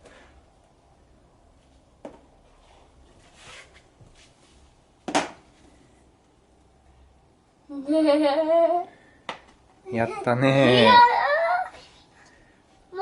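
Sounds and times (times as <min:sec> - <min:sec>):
soft rustle: 0:01.5 - 0:04.9.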